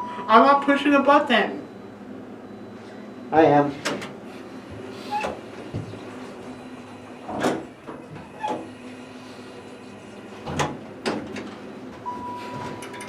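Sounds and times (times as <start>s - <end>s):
elevator doors opening and closing: 3.7s - 13.0s
knocks and clunks: 10.4s - 13.0s.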